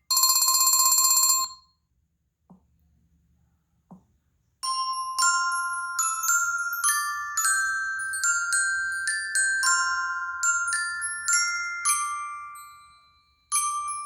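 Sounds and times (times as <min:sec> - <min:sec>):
bell-like ringtone melody: 0:00.1 - 0:01.6, 0:04.6 - 0:14.0.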